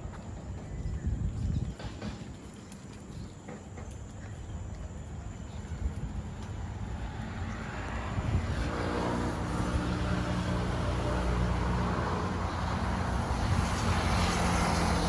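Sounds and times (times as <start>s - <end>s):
engine drone: 6.5s - 15.0s.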